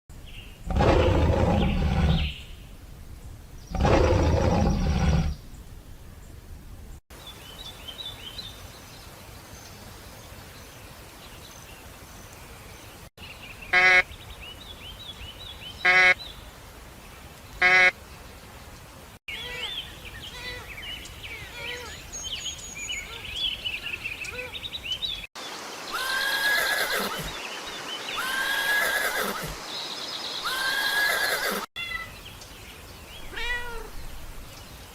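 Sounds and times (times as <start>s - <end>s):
long low animal calls: 0.7s - 2.4s, 3.7s - 5.4s
horse whinnying: 26.0s - 27.3s, 28.2s - 29.6s, 30.4s - 31.7s.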